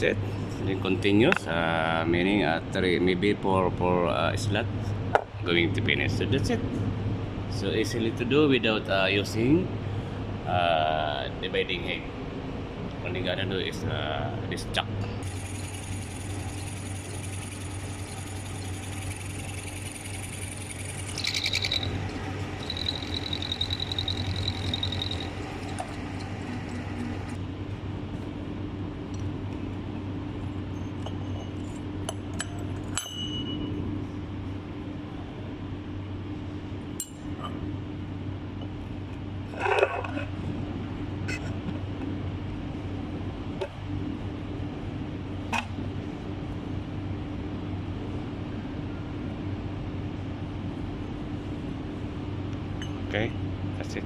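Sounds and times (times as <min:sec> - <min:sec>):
high whine: 0:15.2 - 0:27.4
milling machine humming: 0:15.2 - 0:27.4.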